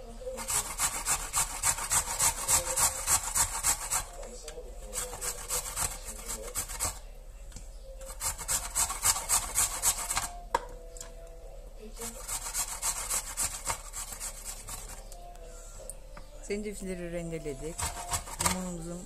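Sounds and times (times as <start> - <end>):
food grated on a grater: 0.2 - 7.0, 8.0 - 10.4, 12.0 - 15.1, 17.6 - 18.8.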